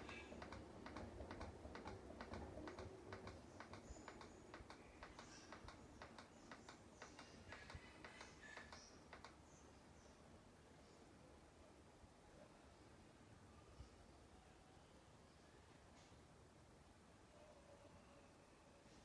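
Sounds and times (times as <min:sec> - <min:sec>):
faint clicks and taps: 0:00.0 - 0:09.4.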